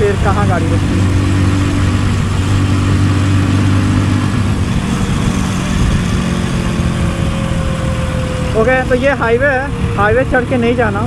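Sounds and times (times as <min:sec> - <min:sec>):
motorcycle engine running: 0:00.0 - 0:11.0
road noise: 0:00.0 - 0:11.0
wind noise on microphone: 0:00.0 - 0:11.0.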